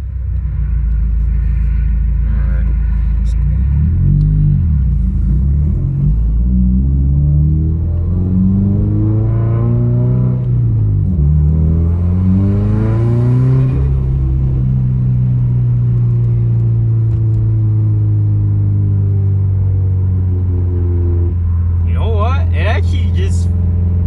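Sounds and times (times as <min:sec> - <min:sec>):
car engine accelerating through gears: 0:02.9 - 0:21.8.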